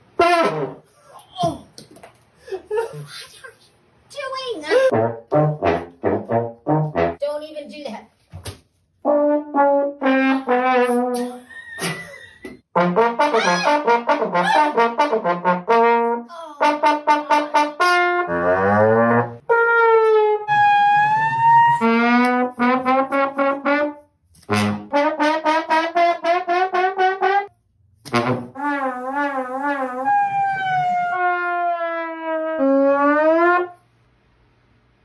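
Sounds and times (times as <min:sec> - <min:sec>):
brass staccato notes: 0:00.0 - 0:00.9, 0:04.9 - 0:07.2, 0:09.0 - 0:11.4, 0:12.7 - 0:33.8.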